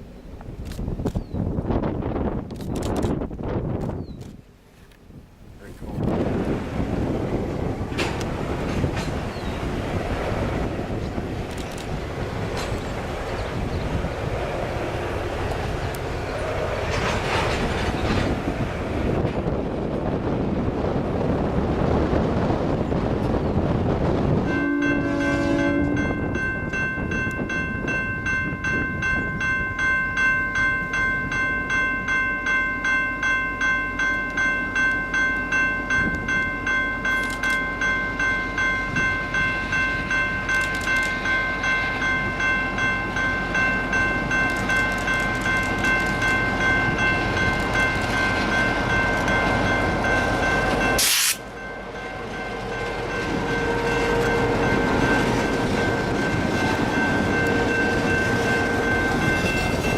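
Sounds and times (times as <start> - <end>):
train rumbling: 0.0 - 59.9
crossing bell ringing: 24.4 - 59.9.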